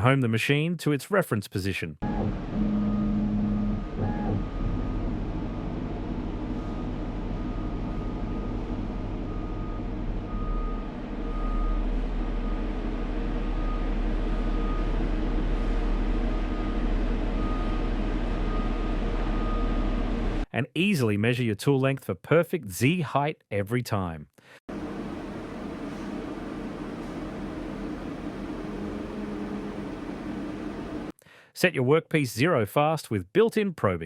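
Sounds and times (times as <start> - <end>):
cnc machine humming: 2.0 - 18.8, 24.7 - 31.1.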